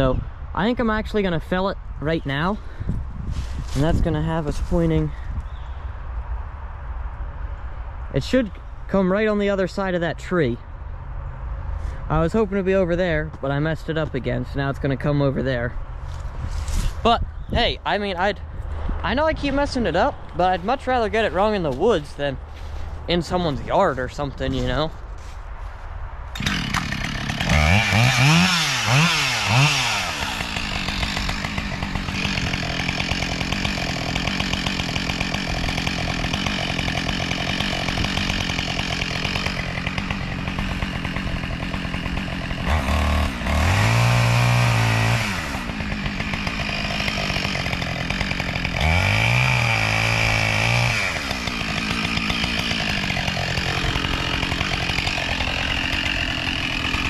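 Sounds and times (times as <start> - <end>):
chainsaw revving and cutting: 26.4 - 57.0.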